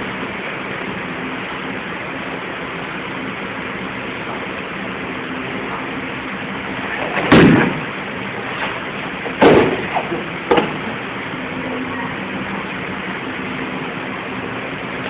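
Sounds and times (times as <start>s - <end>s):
steady background hiss: 0.0s - 15.0s
heavy thuds on a mat: 7.2s - 7.9s, 9.4s - 10.8s.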